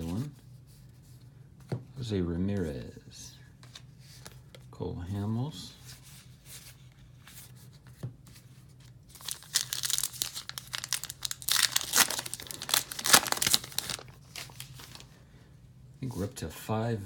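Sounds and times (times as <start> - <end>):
card pack wrapper tearing and crinkling: 9.1 - 15.1.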